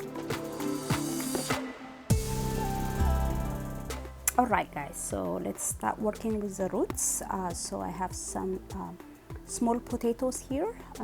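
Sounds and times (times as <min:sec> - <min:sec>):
sustained instrumental music: 0:00.0 - 0:07.6.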